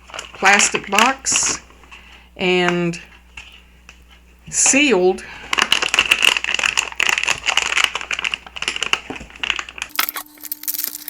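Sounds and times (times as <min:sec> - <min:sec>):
plastic packaging crinkling: 0:00.0 - 0:01.1, 0:05.4 - 0:11.0.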